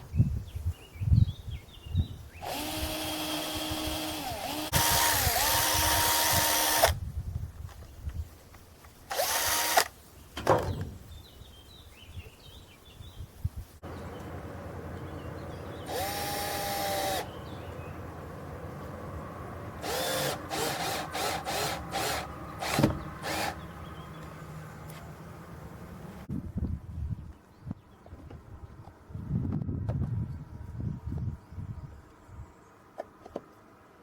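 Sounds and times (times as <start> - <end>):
power drill bursts: 2.4 - 7.0, 9.1 - 9.9, 15.8 - 17.3, 19.8 - 23.6.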